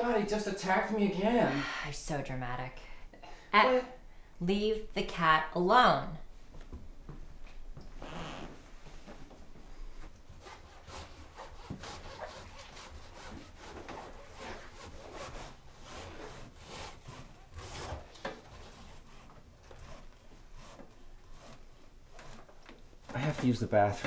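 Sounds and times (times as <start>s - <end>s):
rubbing and scraping strokes: 9.8s - 24.0s.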